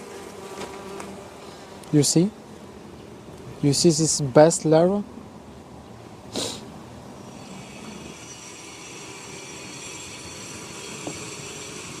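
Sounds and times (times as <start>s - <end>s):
droning hum: 7.1s - 12.0s.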